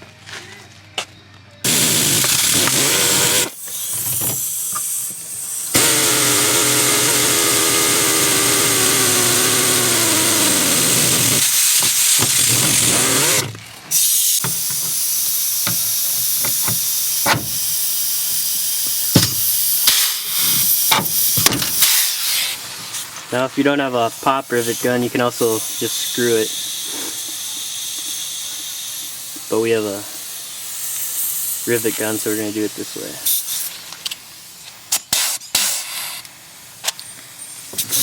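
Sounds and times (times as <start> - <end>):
power tool motor hissing: 1.6 - 22.6, 37.6 - 38.0.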